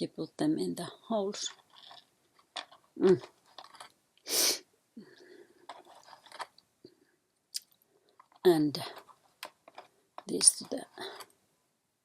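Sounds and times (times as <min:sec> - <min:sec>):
wooden game pieces clicking: 0:01.5 - 0:03.9, 0:05.7 - 0:06.5, 0:08.2 - 0:11.3
sharp burst of breath: 0:04.3 - 0:04.7.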